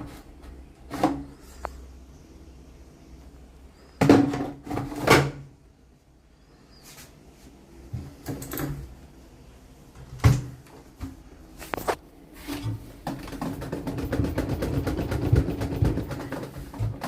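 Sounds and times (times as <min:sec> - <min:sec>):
washing machine knocks and clunks: 0:04.0 - 0:05.5, 0:10.0 - 0:10.6, 0:12.7 - 0:17.0.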